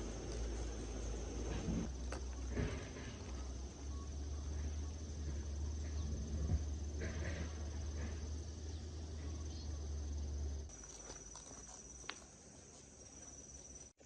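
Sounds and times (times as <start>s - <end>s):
insects chirring: 0.0s - 14.0s.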